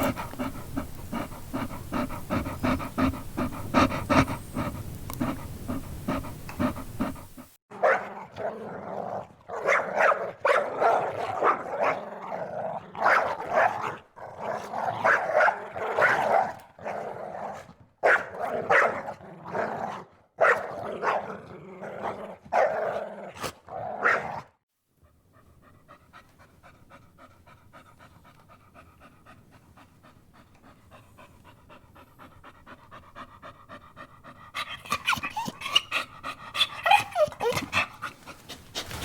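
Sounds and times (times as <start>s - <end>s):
dog panting: 0.0s - 7.6s, 25.0s - 39.0s
dog snarling and growling: 0.0s - 24.6s, 26.7s - 39.0s.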